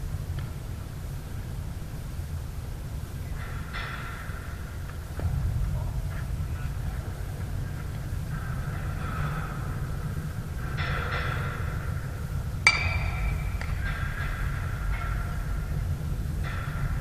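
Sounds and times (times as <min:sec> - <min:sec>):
wind rumble on microphone: 0:00.0 - 0:17.0
bat striking ball ping: 0:12.6 - 0:14.1.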